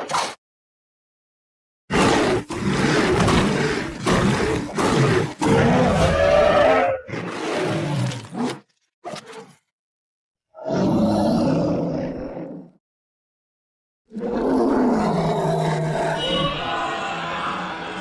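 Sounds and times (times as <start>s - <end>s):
deep creature roars and growls: 1.9s - 8.6s, 10.5s - 12.8s, 14.1s - 18.0s.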